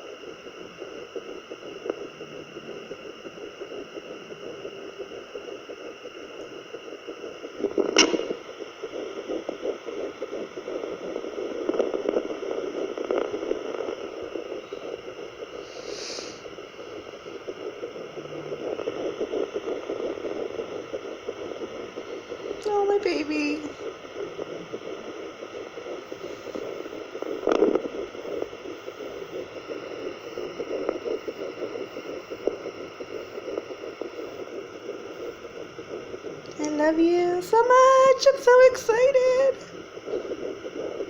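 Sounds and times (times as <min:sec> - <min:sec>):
static hiss: 0:00.0 - 0:41.0
sharp knock: 0:08.0 - 0:08.3.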